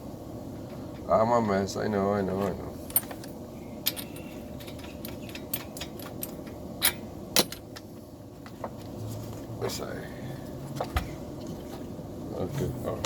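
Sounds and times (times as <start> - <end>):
metal parts and tools clinking: 2.4 - 7.9.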